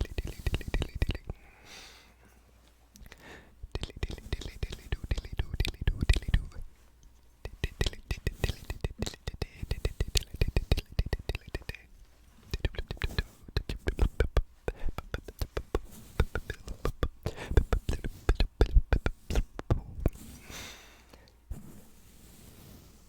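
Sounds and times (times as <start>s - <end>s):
wet mouth clicks and pops: 0.0s - 1.4s, 3.0s - 6.6s, 7.5s - 11.8s, 12.5s - 20.2s
soft hiss: 0.0s - 23.0s.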